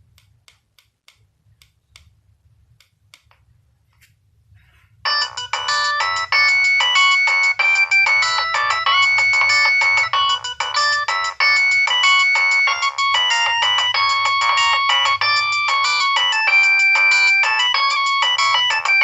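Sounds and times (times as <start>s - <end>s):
mobile phone ringtone: 5.1s - 19.0s.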